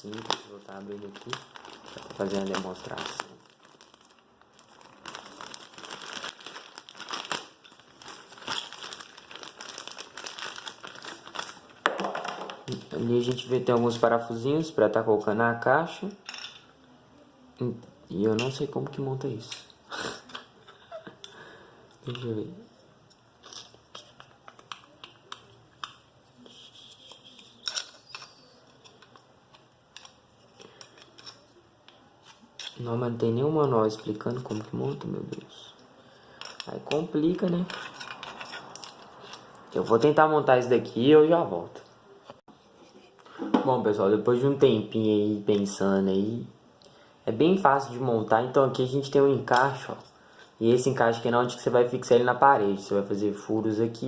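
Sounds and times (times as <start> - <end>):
packaging crinkling and rustling: 0.0 - 14.0, 23.4 - 35.7, 36.3 - 40.2.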